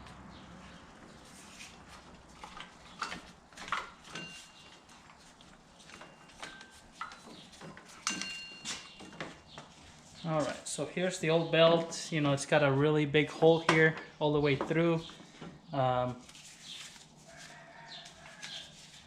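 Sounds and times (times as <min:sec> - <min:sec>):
metal tool clinks: 0:04.1 - 0:04.7, 0:08.0 - 0:09.0.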